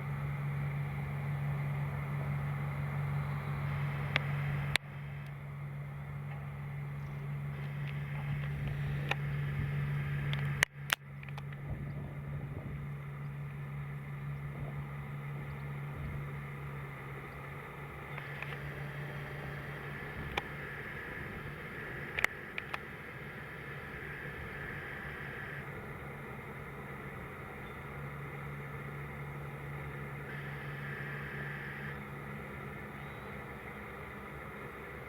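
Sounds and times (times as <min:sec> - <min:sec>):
farm machinery engine humming: 0:00.0 - 0:35.0
high steady whine: 0:00.0 - 0:35.0
sharp clicks: 0:09.9 - 0:11.6, 0:18.1 - 0:19.1, 0:19.8 - 0:25.6.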